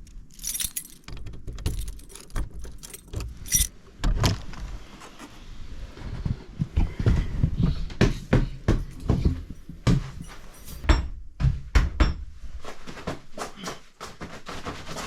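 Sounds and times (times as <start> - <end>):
objects knocking and clunking: 0.0 - 4.6, 6.2 - 12.3.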